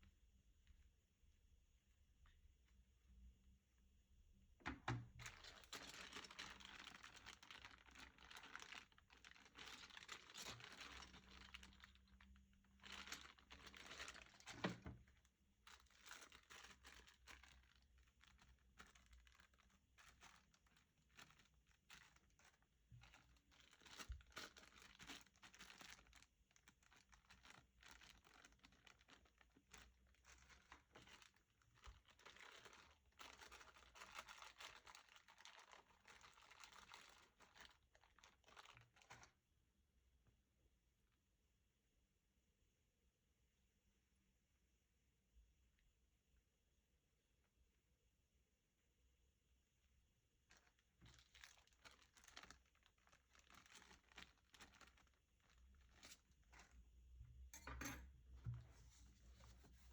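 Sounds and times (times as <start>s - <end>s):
packaging crinkling and rustling: 5.0s - 39.4s, 50.4s - 56.8s, 58.4s - 59.9s.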